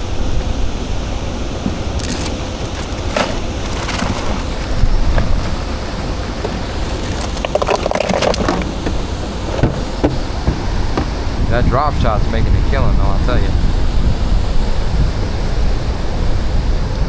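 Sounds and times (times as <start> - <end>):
wind and water rumble on microphone: 0.0 - 17.0
clicks and knocks: 1.6 - 4.6, 6.4 - 11.4.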